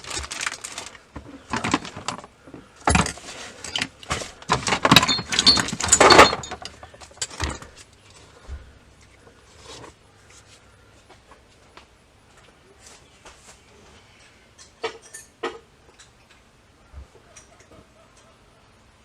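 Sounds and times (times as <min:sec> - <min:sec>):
metal hand tools clattering: 0:02.9 - 0:07.8.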